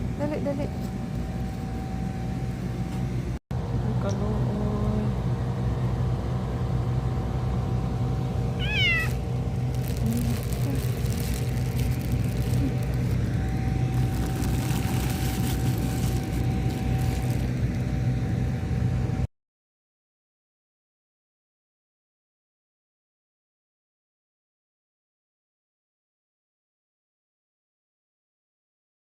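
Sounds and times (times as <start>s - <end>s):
low hum: 0.0s - 19.3s
cat meowing: 8.6s - 9.2s.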